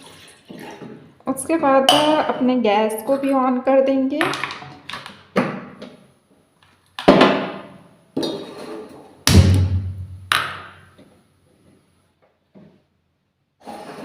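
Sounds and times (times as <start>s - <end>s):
deep hum: 9.3s - 10.3s.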